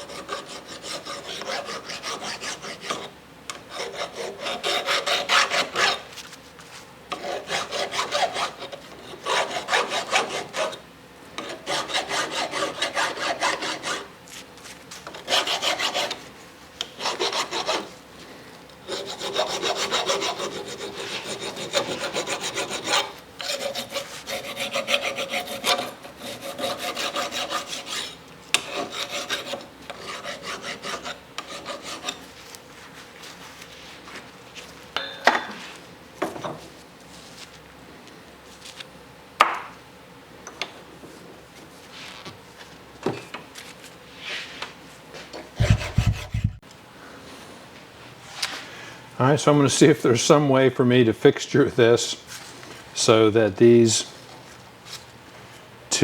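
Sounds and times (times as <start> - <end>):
file rasping on metal: 0.0 - 6.0, 7.1 - 10.8, 11.4 - 14.1, 15.1 - 16.2, 16.9 - 17.9, 18.8 - 32.2, 45.6 - 46.6.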